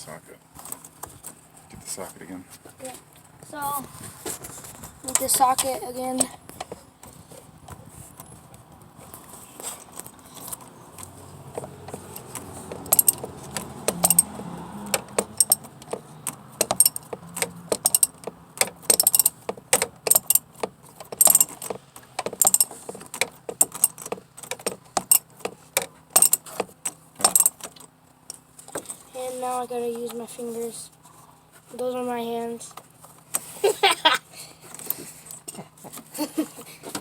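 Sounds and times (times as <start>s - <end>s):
socket wrench clicking: 12.4s - 14.3s, 16.6s - 21.6s.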